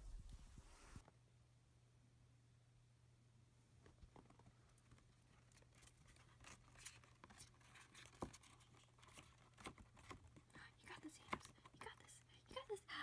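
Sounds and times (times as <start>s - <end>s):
faint clicks and rustles: 3.6s - 12.8s.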